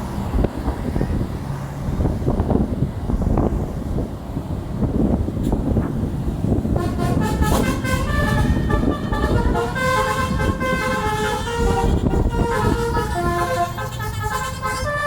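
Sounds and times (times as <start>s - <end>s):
heavy low rumble: 0.0s - 15.0s
bus musical horn tune: 6.6s - 15.0s.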